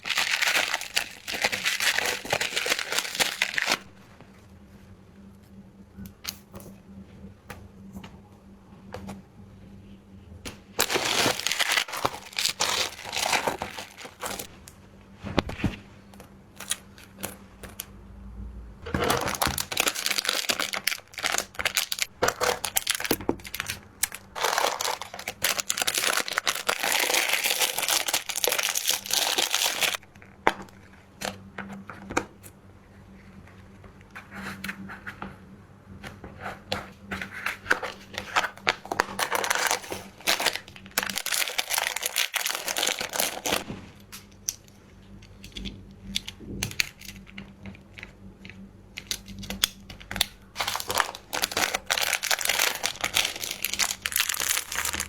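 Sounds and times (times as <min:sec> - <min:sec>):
packaging crinkling: 0:00.0 - 0:04.0, 0:10.8 - 0:14.5, 0:16.6 - 0:17.4, 0:18.8 - 0:30.1, 0:37.9 - 0:43.6, 0:49.0 - 0:55.0.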